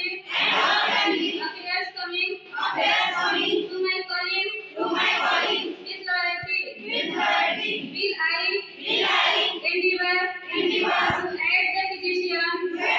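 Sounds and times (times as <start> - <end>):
high voices singing together: 0.0 - 1.6, 2.5 - 3.8, 4.7 - 11.6, 12.6 - 12.9.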